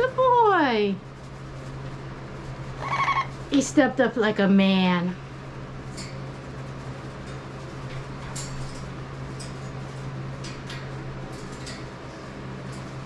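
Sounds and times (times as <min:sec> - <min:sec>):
steady low hum: 0:00.0 - 0:13.0
parrot clicking and scraping in cage: 0:07.2 - 0:12.0.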